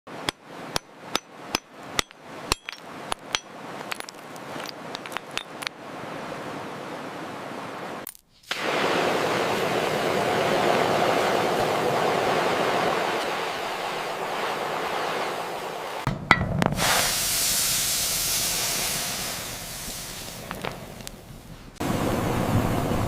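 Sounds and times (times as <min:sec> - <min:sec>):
hammer taps with metallic ring: 0:00.3 - 0:03.5.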